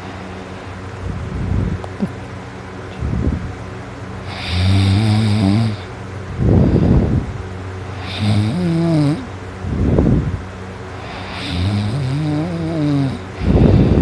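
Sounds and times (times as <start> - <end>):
person snoring: 4.2 - 5.9, 8.0 - 9.3, 11.0 - 14.0.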